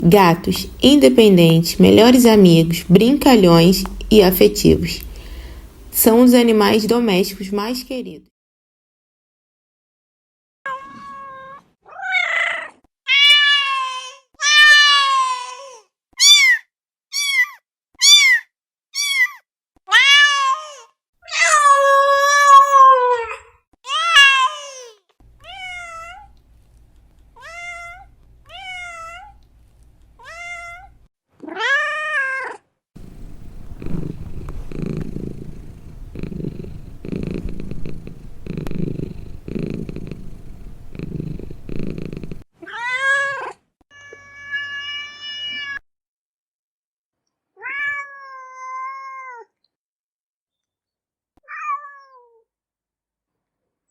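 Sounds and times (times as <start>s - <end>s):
cat purring: 0.0s - 7.9s, 33.0s - 42.4s
cat meowing: 10.7s - 18.4s, 19.0s - 26.3s, 27.4s - 29.4s, 30.2s - 35.5s, 47.6s - 49.5s
kitten mewing: 33.0s - 42.4s.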